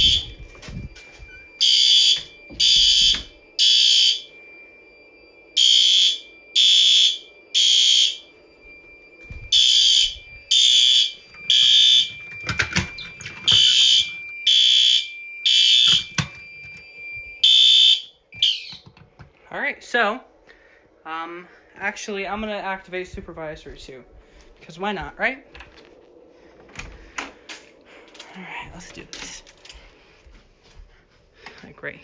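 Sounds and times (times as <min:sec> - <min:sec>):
faint steady high tone: 0:00.0 - 0:10.5
fire alarm horn blasts: 0:00.0 - 0:18.8.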